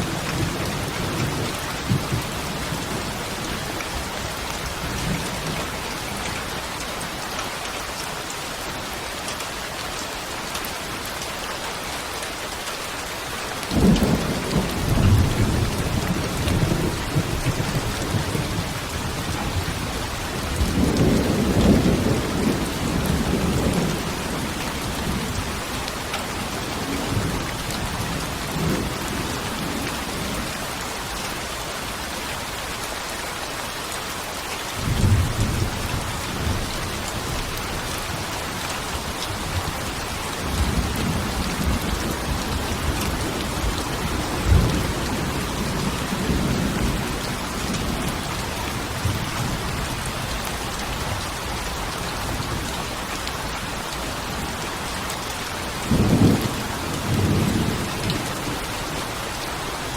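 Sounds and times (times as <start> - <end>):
heavy rain: 0.0 - 59.9
thunder rumbling: 13.7 - 25.6, 34.8 - 50.4, 55.8 - 59.1.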